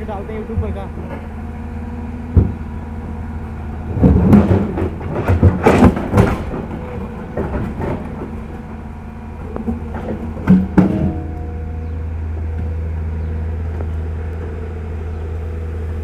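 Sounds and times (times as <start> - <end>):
excavator diesel engine running: 0.0 - 16.0
rock scraping and clattering: 3.9 - 11.7.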